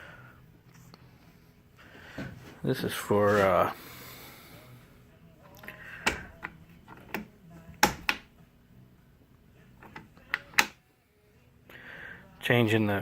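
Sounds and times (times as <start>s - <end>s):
lathe lever clicks and knocks: 6.0s - 8.3s, 9.8s - 10.8s.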